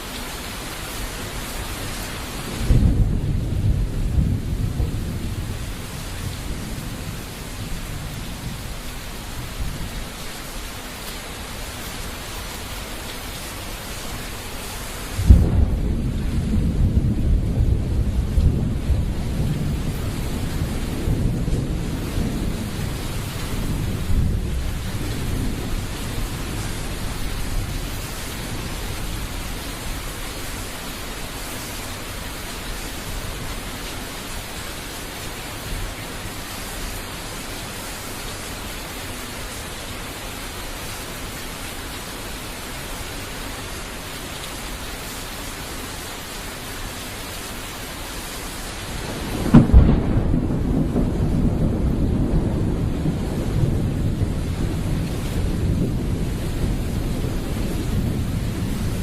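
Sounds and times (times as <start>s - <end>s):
heavy rain: 0.0s - 59.0s
thunder rumbling: 2.2s - 10.4s, 15.1s - 30.5s, 48.8s - 59.0s
sharp thunderclap: 2.5s - 8.7s, 15.2s - 29.4s, 49.0s - 59.0s.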